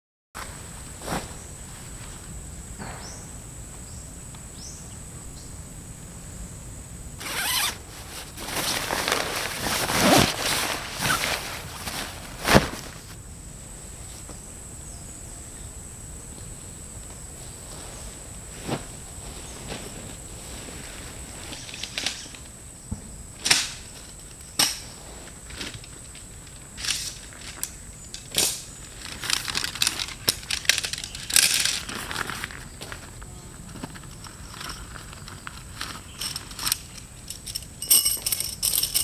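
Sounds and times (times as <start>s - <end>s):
faint high-pitched hum: 0.4s - 39.0s
zipper opening and closing: 7.2s - 12.9s
gear rustling: 7.2s - 13.2s, 28.8s - 32.7s, 33.7s - 39.0s.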